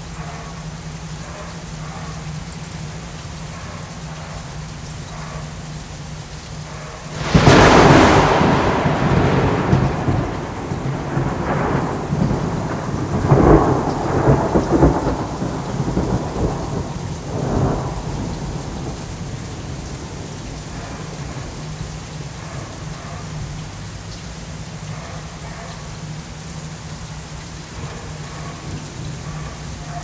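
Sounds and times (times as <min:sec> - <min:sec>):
steady falling rain: 0:00.0 - 0:30.0
thunder crack and rumbles: 0:07.1 - 0:23.5.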